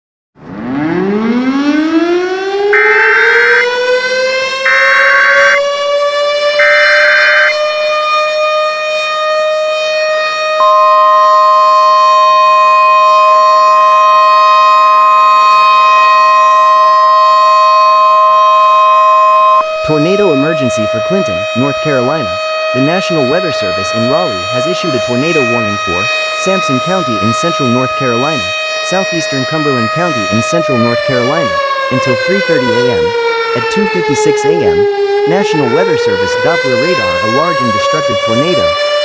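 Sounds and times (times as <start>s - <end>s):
siren wailing: 0.4s - 39.0s
steady warning tone: 0.6s - 39.0s
screeching data bursts: 2.8s - 3.7s, 4.6s - 5.6s, 6.6s - 7.6s.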